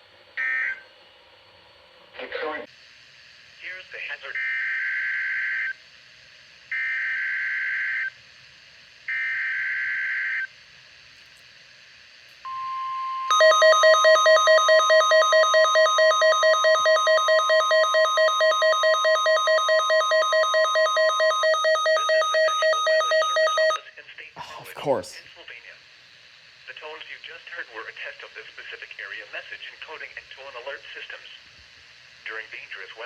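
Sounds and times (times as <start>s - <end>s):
pulsing alarm beeps: 12.5s - 23.8s
steady warning alarm tone: 12.5s - 23.8s.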